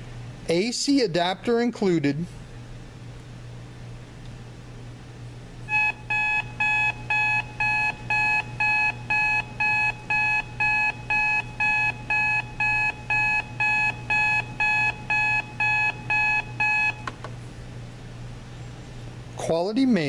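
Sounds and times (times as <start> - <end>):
alarm clock buzzer beeping: 5.7 - 17.0.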